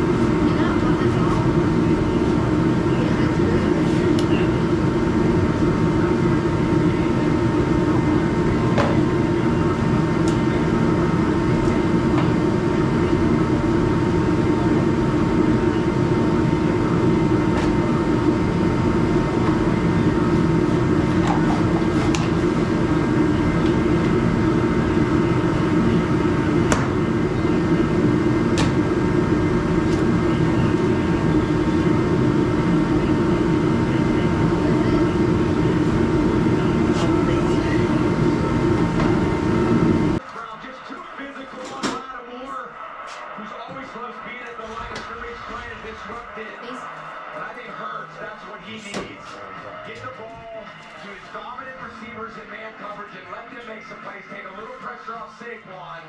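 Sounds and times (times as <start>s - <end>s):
loud mechanical drone: 0.0s - 40.2s.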